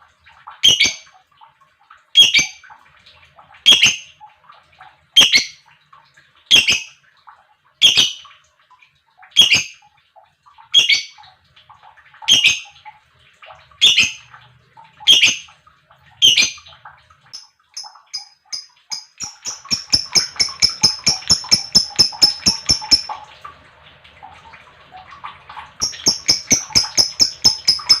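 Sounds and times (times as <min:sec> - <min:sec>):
bird high chirps: 0:07.8 - 0:08.2, 0:15.1 - 0:15.4, 0:17.8 - 0:23.2, 0:25.8 - 0:28.0.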